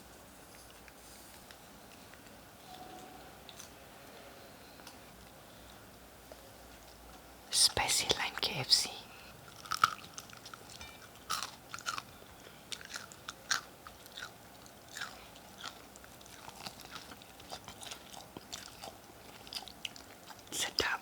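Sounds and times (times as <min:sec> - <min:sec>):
person chewing crispy chicken: 0:09.4 - 0:20.5.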